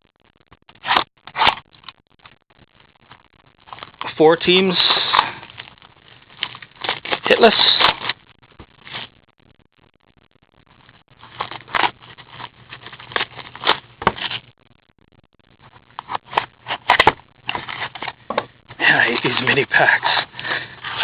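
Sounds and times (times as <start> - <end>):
cards scraping: 0.8 - 1.6, 6.4 - 8.2, 11.2 - 14.5, 15.9 - 21.0
card wrappers crinkling: 5.0 - 8.2, 11.2 - 14.4, 15.9 - 21.0.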